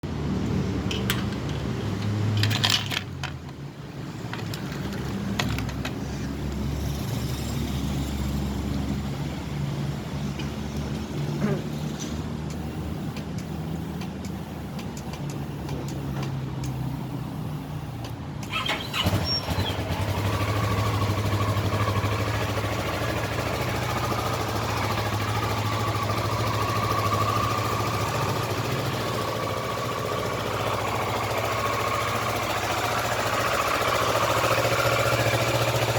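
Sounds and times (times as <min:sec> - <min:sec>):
motorcycle engine idling: 0:18.5 - 0:35.9.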